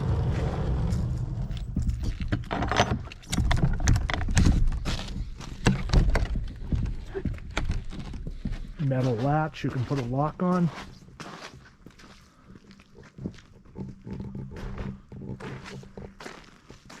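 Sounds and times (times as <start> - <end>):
low rumble: 0.0 - 2.5
sliding doors rolling on track: 0.0 - 3.1
wooden clacks and knocks: 1.7 - 8.8.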